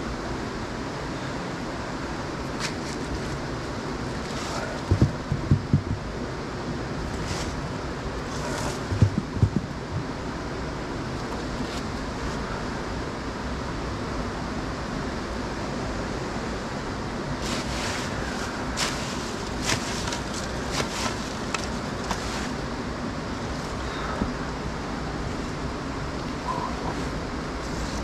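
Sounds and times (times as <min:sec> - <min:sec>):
sharp clicks and knocks: 0:04.9 - 0:06.1, 0:08.9 - 0:10.1
low thumps: 0:04.9 - 0:06.2, 0:08.9 - 0:10.2.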